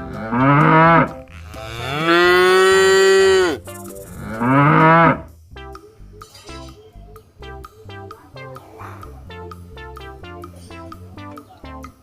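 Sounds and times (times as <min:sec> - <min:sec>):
cow mooing: 0:00.1 - 0:03.6, 0:04.2 - 0:05.2
plucked guitar music: 0:05.5 - 0:12.0.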